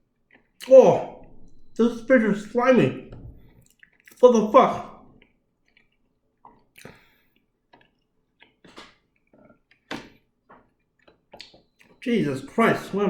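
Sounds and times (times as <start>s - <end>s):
faint wet chewing: 0.1s - 0.7s, 5.1s - 12.0s.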